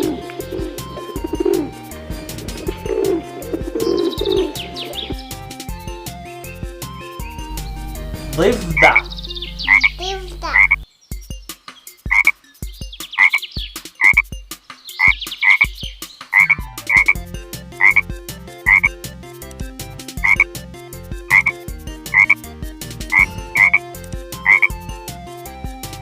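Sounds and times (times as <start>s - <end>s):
deeper repeating call: 7.5s - 10.8s, 23.1s - 23.9s
frog croaking: 8.7s - 10.8s, 12.1s - 12.3s, 13.2s - 13.4s, 14.0s - 14.3s, 15.0s - 15.7s, 16.3s - 17.2s, 17.8s - 18.1s, 18.7s - 18.9s, 20.2s - 20.5s, 21.3s - 22.4s, 23.1s - 23.8s, 24.4s - 24.8s.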